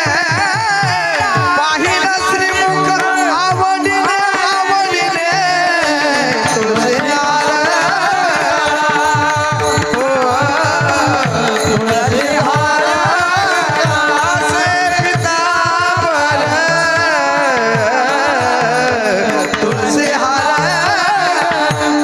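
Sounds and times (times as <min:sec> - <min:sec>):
man singing: 0:00.0 - 0:22.0.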